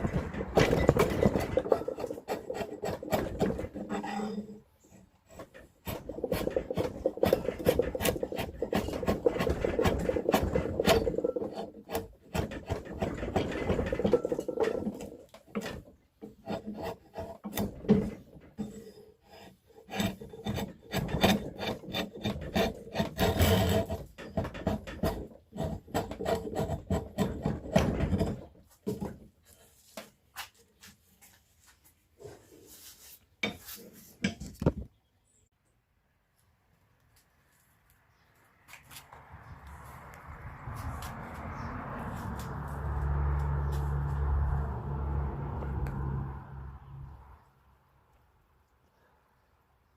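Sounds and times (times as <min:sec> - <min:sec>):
rasp scraping wood: 0:00.0 - 0:30.6.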